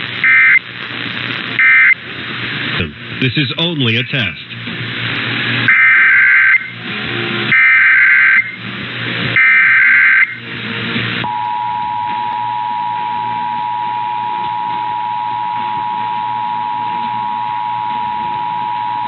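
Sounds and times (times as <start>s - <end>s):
screeching digital data bursts: 0.2s - 0.6s, 1.6s - 2.0s, 5.6s - 6.8s, 7.5s - 8.6s, 9.4s - 10.4s.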